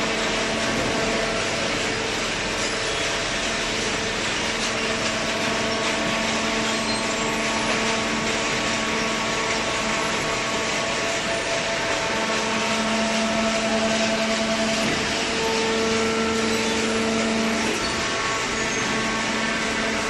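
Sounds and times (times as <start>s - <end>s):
hydraulic baler running: 0.0s - 20.0s
hydraulic pump hum: 0.0s - 20.0s.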